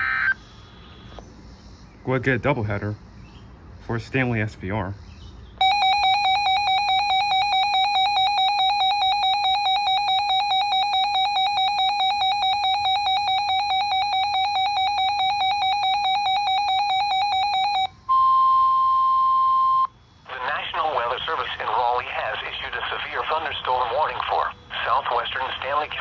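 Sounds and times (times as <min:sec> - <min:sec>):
rapidly pulsing electronic beep: 0:05.6 - 0:17.9
steady warning alarm tone: 0:05.6 - 0:18.4.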